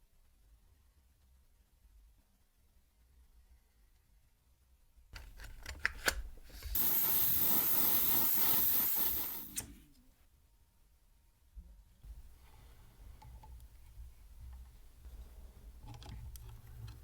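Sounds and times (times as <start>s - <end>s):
spray hiss: 6.5s - 9.8s.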